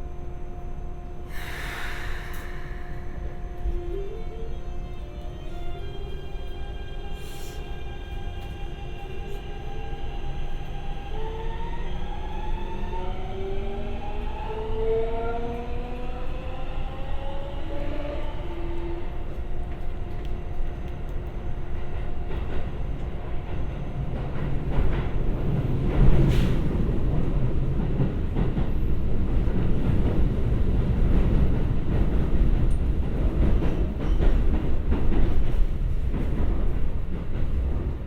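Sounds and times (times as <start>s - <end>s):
electric train inverter whine: 0.0s - 24.4s
train wheels rumbling on rail: 0.0s - 38.0s.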